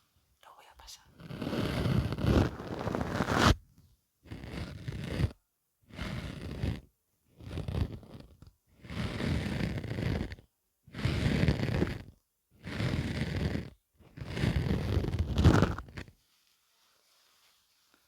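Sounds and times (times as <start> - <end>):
pompom brushing over microphone: 1.4 - 3.6.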